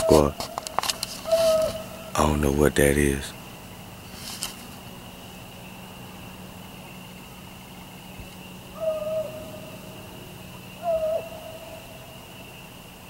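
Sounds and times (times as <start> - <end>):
animal hooting calls: 0.0 - 3.4, 8.6 - 12.4
faint high whine: 0.0 - 13.0.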